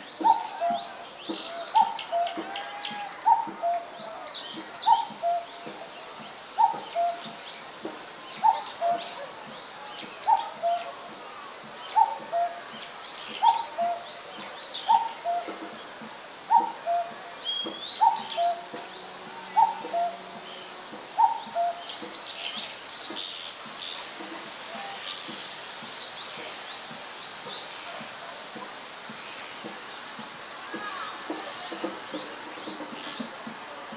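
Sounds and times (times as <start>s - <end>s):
cuckoo calling: 0.1s - 25.6s
woodpeckers squeaky calls: 16.5s - 18.9s.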